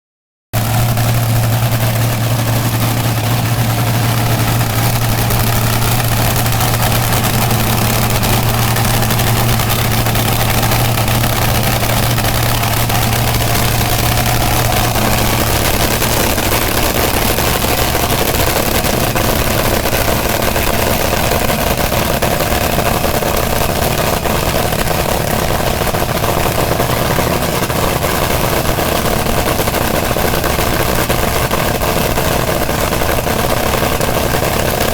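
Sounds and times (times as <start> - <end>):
engine idling: 0.6 - 34.9.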